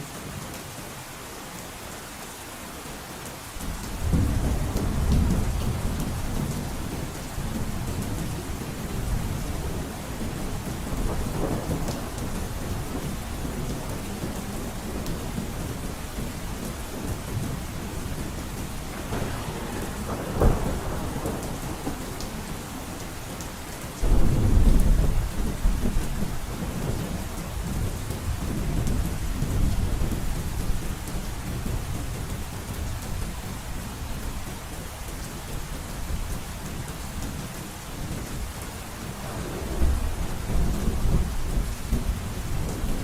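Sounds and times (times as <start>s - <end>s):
heavy rain drumming on roof: 0.0s - 43.0s
low rumble of thunder: 3.7s - 23.4s, 24.0s - 33.9s, 37.2s - 43.0s
sharp thunder crack: 18.9s - 22.2s, 24.0s - 25.9s, 39.2s - 42.1s.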